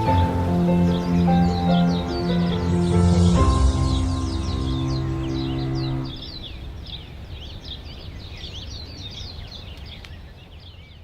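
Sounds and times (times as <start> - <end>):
background music held note: 0.0 - 6.9
birds chirping: 0.0 - 11.0.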